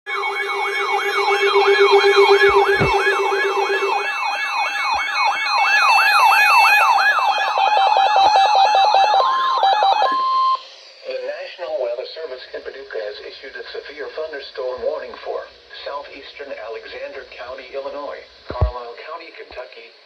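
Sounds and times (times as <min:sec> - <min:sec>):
low pulsing tone: 0:00.1 - 0:05.2
rapid beeping: 0:00.1 - 0:08.0
high steady tone: 0:00.1 - 0:08.2
electronic alarm beeps: 0:00.1 - 0:10.6
falling siren sweep: 0:00.1 - 0:10.6.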